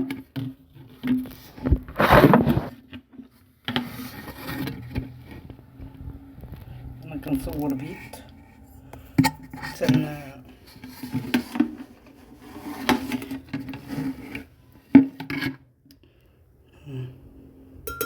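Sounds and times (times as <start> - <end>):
utensils scraping a dish: 7.8 - 15.6.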